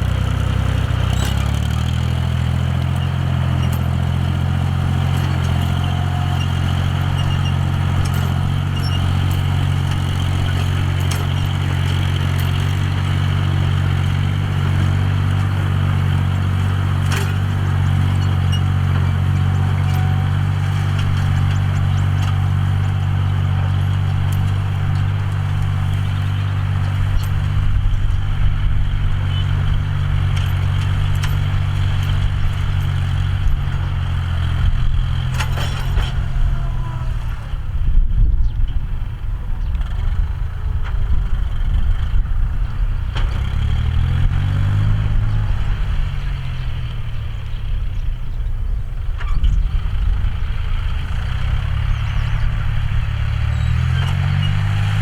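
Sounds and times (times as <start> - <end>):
tractor diesel engine running: 0.0 - 55.0
light clicks and clatter: 30.3 - 34.6.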